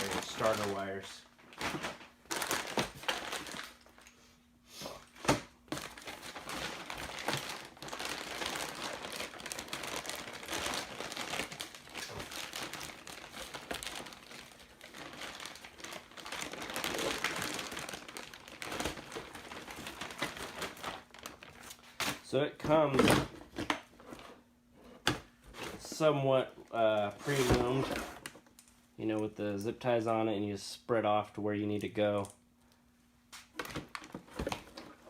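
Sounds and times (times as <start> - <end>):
plastic packaging crinkling: 0.0 - 4.1, 5.2 - 22.3.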